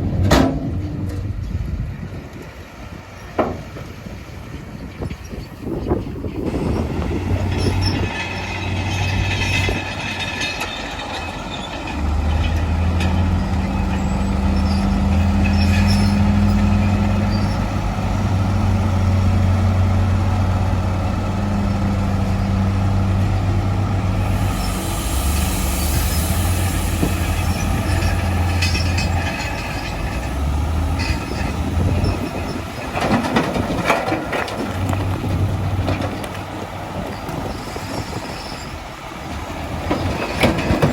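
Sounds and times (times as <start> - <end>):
bulldozer diesel engine: 0.0 - 40.9
steel tracks squealing and clanking: 3.1 - 40.9.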